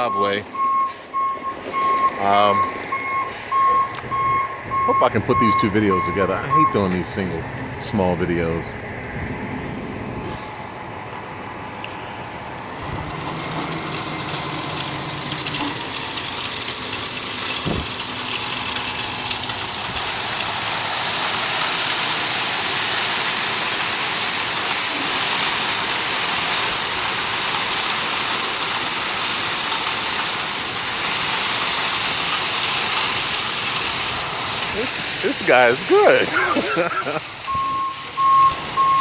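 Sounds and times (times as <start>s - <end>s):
low truck hum: 0.0s - 27.9s, 30.4s - 39.0s
crushed stone pouring from truck: 12.7s - 34.7s.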